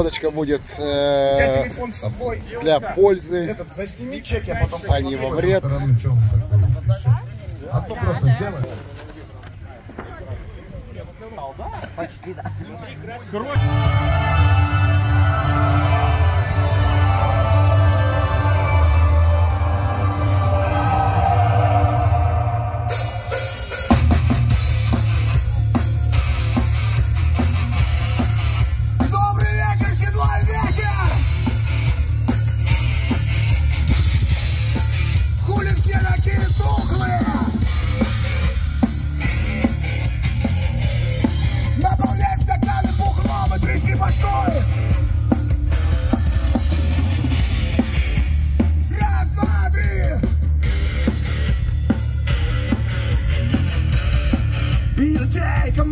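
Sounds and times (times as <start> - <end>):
drums: 0.0 - 10.9, 13.3 - 55.9
loud rock music: 13.6 - 55.9.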